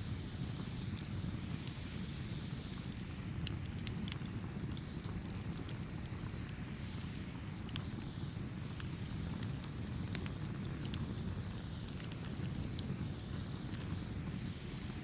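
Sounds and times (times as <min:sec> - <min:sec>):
burning wood crackles and pops: 0:00.0 - 0:15.0
low rumble of flames: 0:00.0 - 0:15.0.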